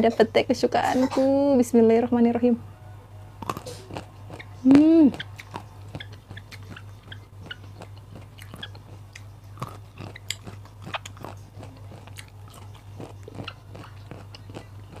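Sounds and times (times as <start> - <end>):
steady low hum: 0.0 - 15.0
chewing crunchy raw vegetables: 3.4 - 15.0.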